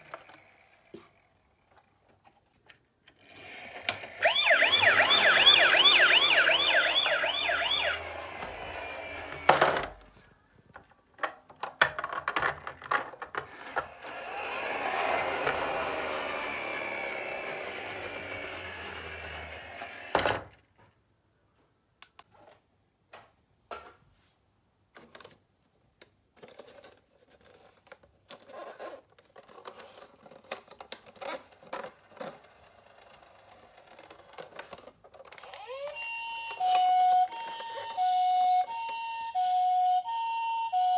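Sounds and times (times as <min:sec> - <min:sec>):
plastic toy cars clacking: 0:00.0 - 0:05.6, 0:07.9 - 0:21.0, 0:24.9 - 0:39.0
hissy toy siren: 0:04.1 - 0:09.5, 0:35.4 - 0:40.9
toy siren wailing: 0:04.2 - 0:09.5, 0:35.4 - 0:40.9.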